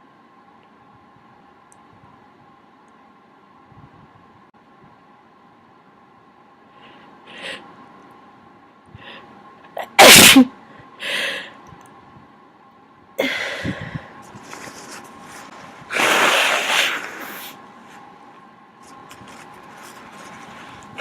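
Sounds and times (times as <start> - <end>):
noisy burst of breath: 6.7 - 7.7, 10.1 - 11.6, 15.8 - 17.6
person sneezing: 9.8 - 10.5, 15.9 - 17.6.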